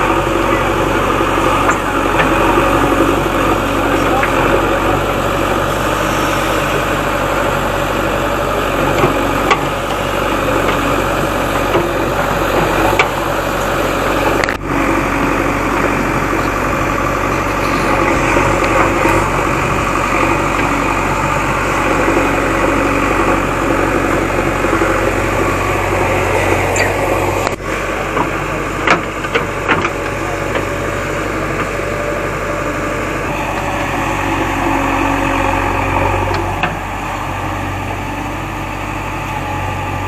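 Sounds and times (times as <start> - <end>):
diesel engine running: 0.0 - 40.0.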